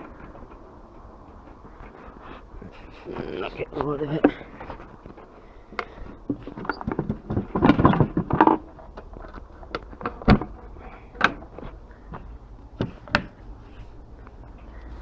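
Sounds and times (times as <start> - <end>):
hard objects rattling: 4.0 - 13.4.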